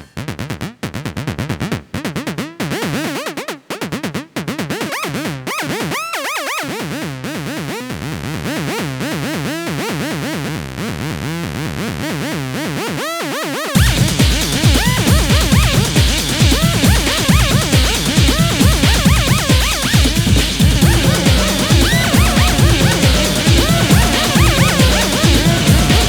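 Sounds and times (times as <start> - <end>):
stuttering synthesizer riff: 13.8 - 26.0.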